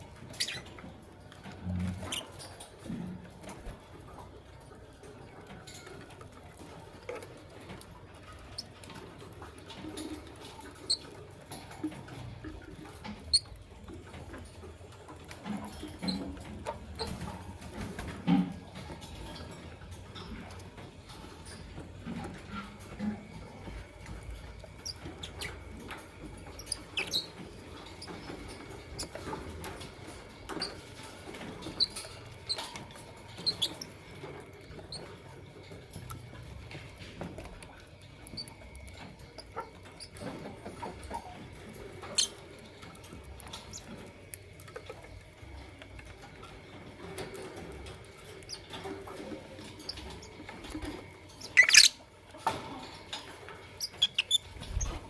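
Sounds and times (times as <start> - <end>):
light clicking and pattering: 0.0 - 55.0
lovebirds chirping: 51.4 - 52.0, 53.8 - 55.0.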